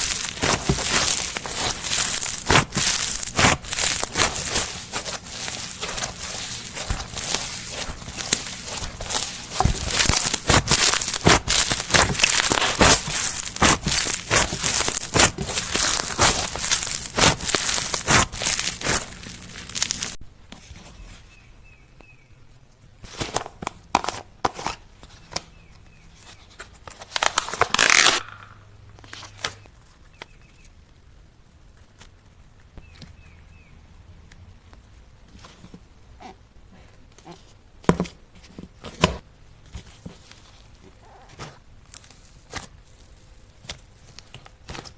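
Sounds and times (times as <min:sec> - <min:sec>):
slime crackling and popping: 0:00.0 - 0:20.2
slime squish: 0:00.0 - 0:20.2.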